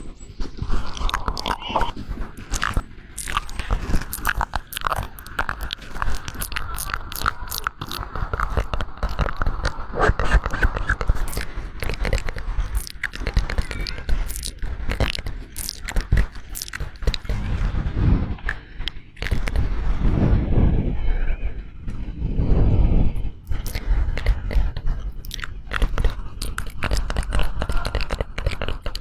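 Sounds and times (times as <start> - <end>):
crunching and crackling: 0.4 - 20.1, 23.4 - 29.0.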